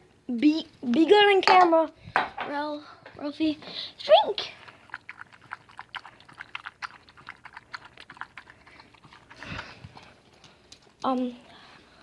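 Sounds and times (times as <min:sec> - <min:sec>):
dog lapping water: 0:04.4 - 0:10.3.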